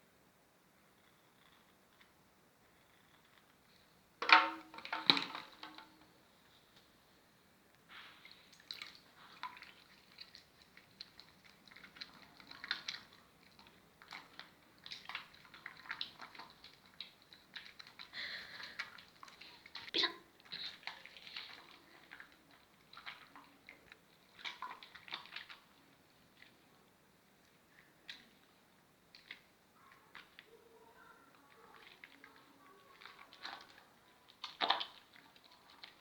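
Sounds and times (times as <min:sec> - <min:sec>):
soap lathering squishy foam: 0:08.0 - 0:26.7, 0:27.4 - 0:36.0.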